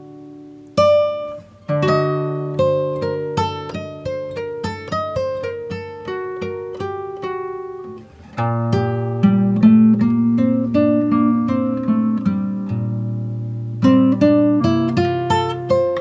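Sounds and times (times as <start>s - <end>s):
acoustic guitar music: 0.0s - 16.0s.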